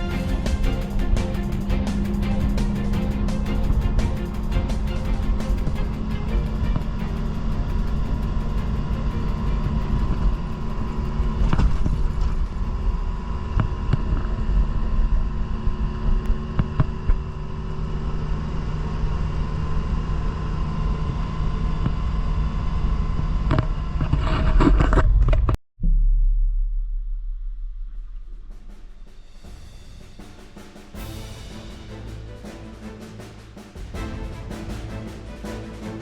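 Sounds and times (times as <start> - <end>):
road noise: 0.0 - 23.5.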